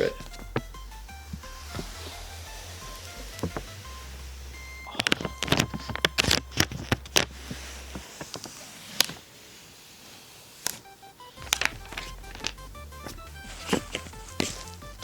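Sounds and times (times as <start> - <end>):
plastic film crinkling: 0.0 - 15.0.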